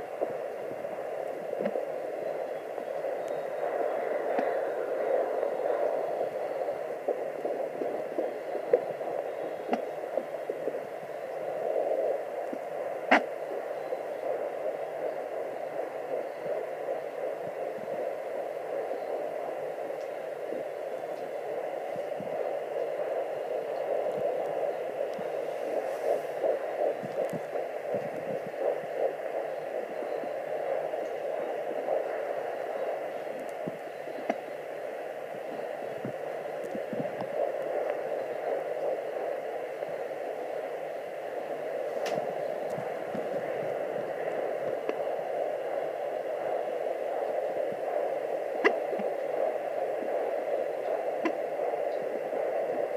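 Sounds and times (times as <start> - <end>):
fetal heartbeat: 0.0 - 52.9.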